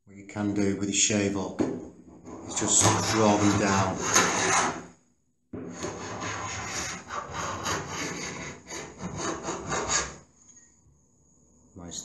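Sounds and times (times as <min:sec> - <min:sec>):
blade scraping paint off wood: 0:02.4 - 0:04.8.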